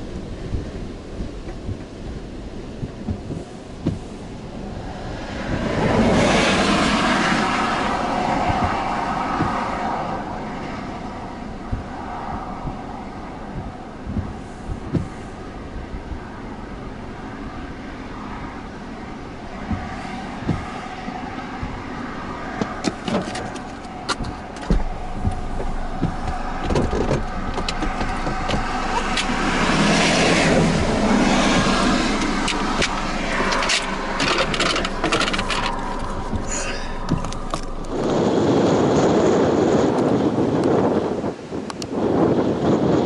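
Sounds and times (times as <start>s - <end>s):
vehicle engine drone: 0.0s - 43.0s
loud rushing noise: 3.0s - 41.5s
sharp clicks and knocks: 13.5s - 15.2s, 19.6s - 38.2s.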